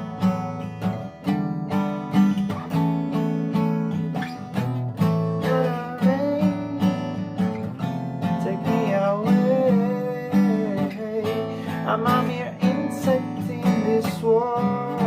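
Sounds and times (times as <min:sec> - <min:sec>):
fingerstyle acoustic guitar: 0:00.0 - 0:15.0
wordless singing: 0:05.4 - 0:07.1, 0:08.4 - 0:15.0.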